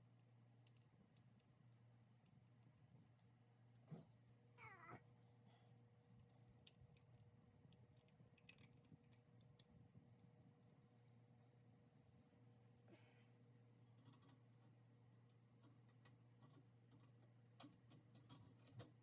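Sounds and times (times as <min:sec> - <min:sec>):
low steady hum: 0:00.0 - 0:19.0
faint clicks and ticks: 0:13.8 - 0:19.0.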